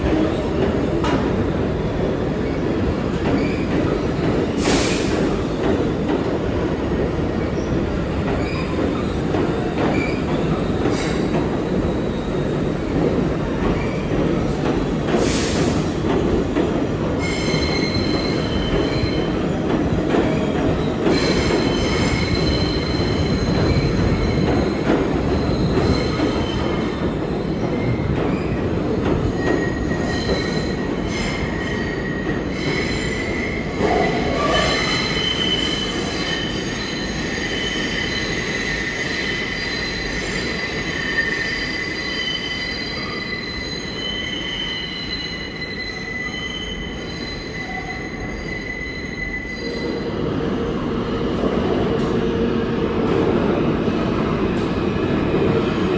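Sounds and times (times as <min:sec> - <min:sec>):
subway train rumbling: 0:00.0 - 0:55.9
train wheels squealing: 0:02.3 - 0:05.9, 0:07.3 - 0:51.7.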